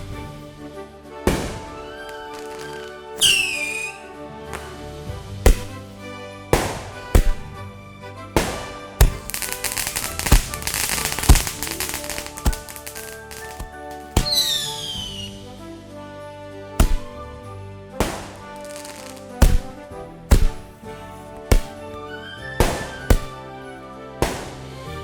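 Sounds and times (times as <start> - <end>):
booming firework shell blasts: 0.0 - 0.6, 1.2 - 15.6, 16.7 - 25.0
dense firework crackling: 0.0 - 0.6, 1.3 - 15.5, 16.8 - 17.3, 17.9 - 22.0, 22.6 - 23.5, 24.2 - 25.0
sharp firework bangs: 0.0 - 0.6, 1.2 - 7.8, 8.4 - 15.5, 16.8 - 17.3, 17.9 - 25.0
background music: 0.0 - 25.0
firework whistle falling in pitch: 1.9 - 4.1, 14.2 - 15.4.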